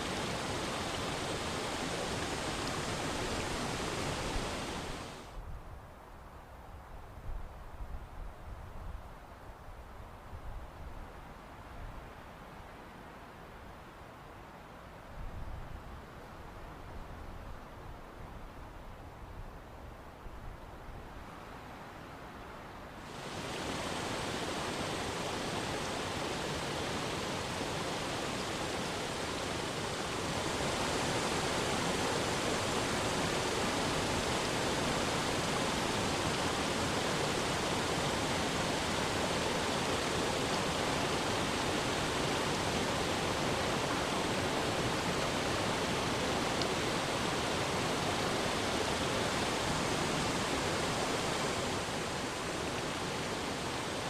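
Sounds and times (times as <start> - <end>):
waterfall rushing over rocks: 0.0 - 5.3, 23.0 - 54.0.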